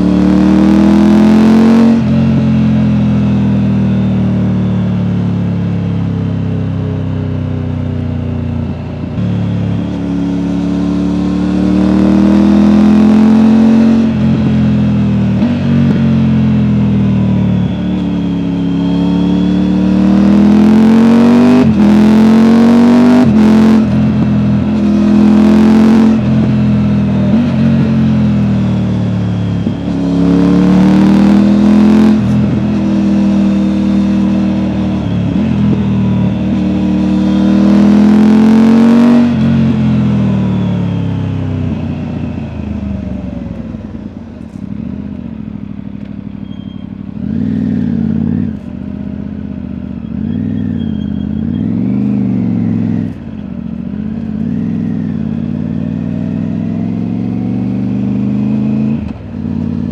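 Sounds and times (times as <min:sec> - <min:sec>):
motorcycle engine accelerating: 0:00.0 - 0:59.9.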